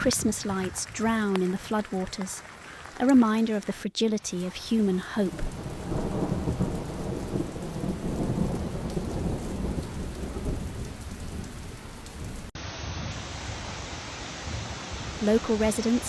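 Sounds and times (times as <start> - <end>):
heavy rain: 0.0 - 16.0
thunder rumbling: 5.2 - 12.5.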